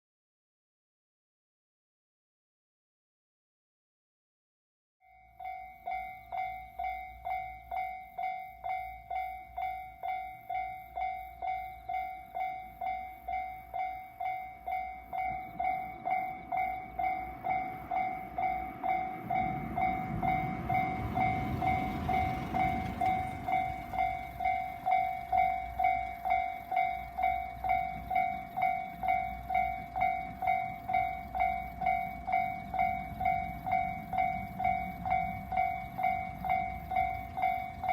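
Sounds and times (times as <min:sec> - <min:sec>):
level crossing bell ringing: 0:05.1 - 0:37.9
train wheels rumbling on rails: 0:05.6 - 0:37.9.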